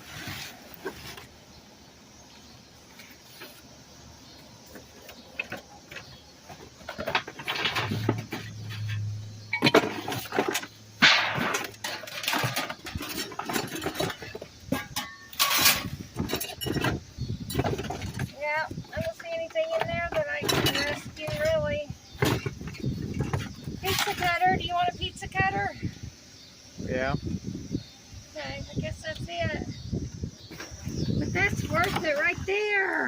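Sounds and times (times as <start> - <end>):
rustling junk: 0.0 - 1.6, 2.8 - 25.7, 30.4 - 33.0
objects knocking and clattering: 4.7 - 24.4.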